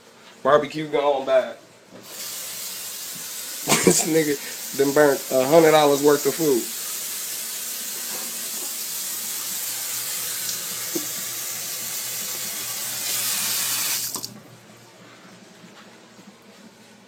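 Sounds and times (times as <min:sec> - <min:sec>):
food sizzling on a grill: 0:02.0 - 0:14.2.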